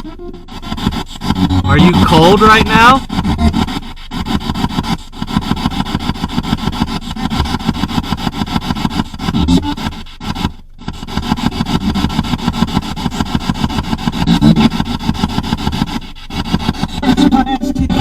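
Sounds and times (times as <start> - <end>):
pulsing radio static: 1.2 - 4.9, 9.2 - 10.5, 13.8 - 15.9, 16.8 - 18.0.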